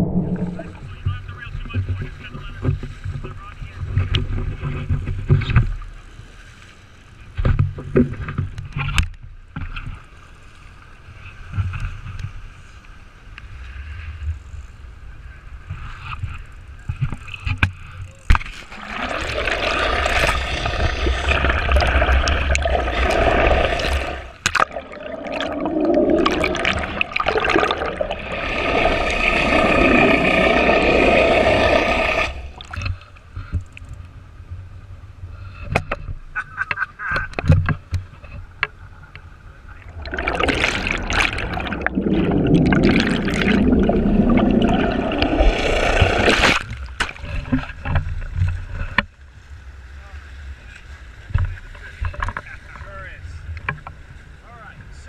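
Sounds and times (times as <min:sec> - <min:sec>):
wind on microphone: 0:00.0 - 0:02.1
boat engines and rushing water: 0:00.0 - 0:55.0.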